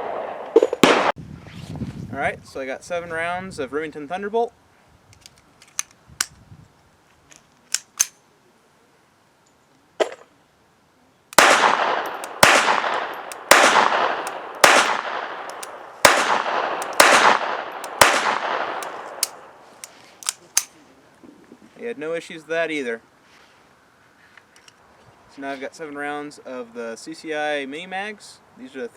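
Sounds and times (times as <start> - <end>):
pistol shots: 0.0 - 1.1, 11.4 - 19.5
light clicks of gun handling: 5.1 - 6.4, 7.1 - 8.2, 12.0 - 13.5, 14.2 - 15.8, 18.8 - 20.8, 24.3 - 24.8.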